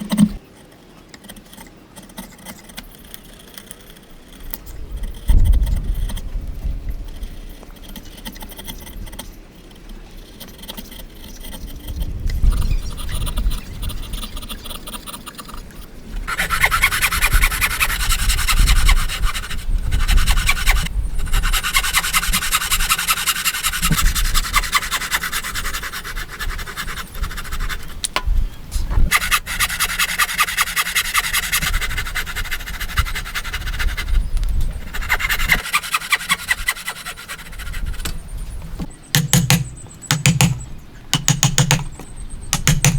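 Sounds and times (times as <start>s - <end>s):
hand tool rasping wood: 16.2s - 28.0s, 29.0s - 38.2s, 38.8s - 40.6s, 41.2s - 41.9s, 42.6s - 42.9s.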